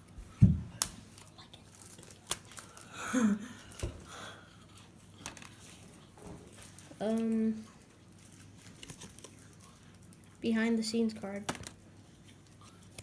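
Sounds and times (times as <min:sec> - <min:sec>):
cards crinkling and shuffling: 0:00.8 - 0:03.0, 0:04.8 - 0:05.9, 0:06.5 - 0:10.4, 0:11.2 - 0:13.0.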